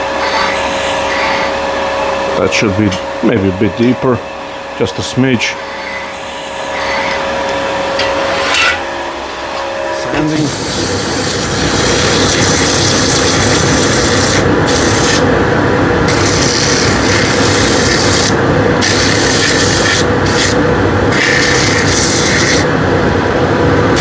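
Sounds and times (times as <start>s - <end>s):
lathe running hum: 0.0s - 24.0s
sandpaper hissing on wood: 10.3s - 15.3s, 16.1s - 22.7s.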